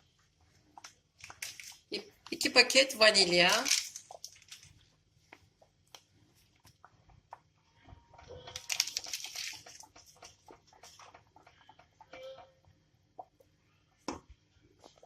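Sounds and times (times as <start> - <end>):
sachet rustling and scraping: 1.2 - 1.9, 3.1 - 4.8, 8.5 - 11.1.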